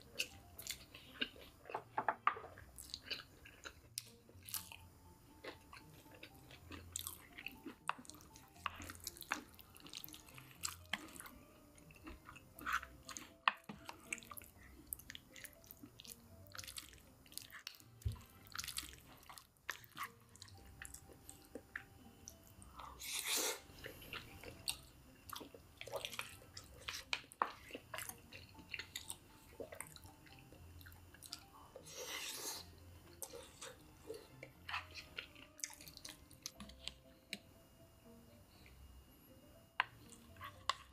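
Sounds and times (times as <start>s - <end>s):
chewing crispy fried chicken: 0.0s - 37.0s.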